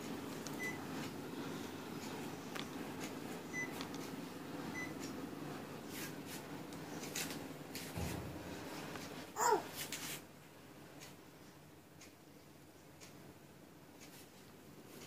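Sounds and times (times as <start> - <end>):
air conditioner humming: 0.0 - 15.0.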